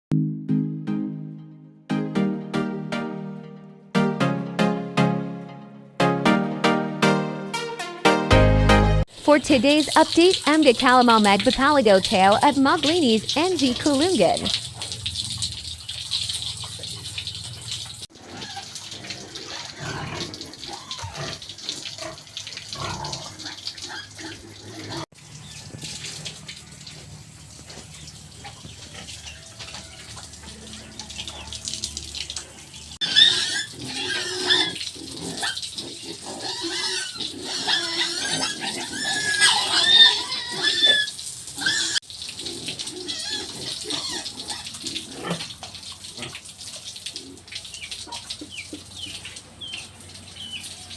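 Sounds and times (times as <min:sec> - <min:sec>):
pigs grunting and squealing: 0:18.1 - 0:25.1, 0:33.0 - 0:46.4.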